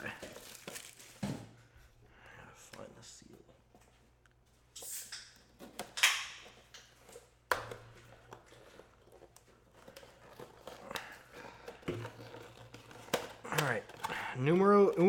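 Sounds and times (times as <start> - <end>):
crinkling and clicks: 5.2 - 15.0.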